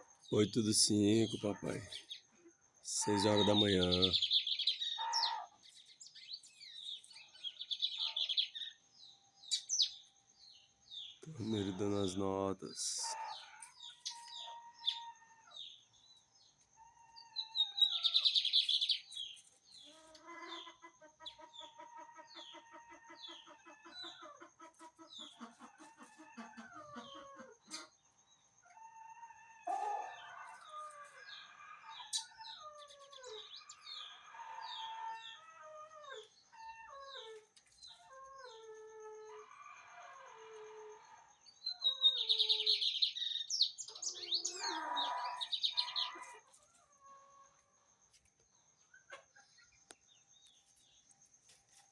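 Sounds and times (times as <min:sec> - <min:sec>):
chickens clucking: 0:00.0 - 0:04.2, 0:11.2 - 0:18.1, 0:19.2 - 0:42.4, 0:44.1 - 0:50.8.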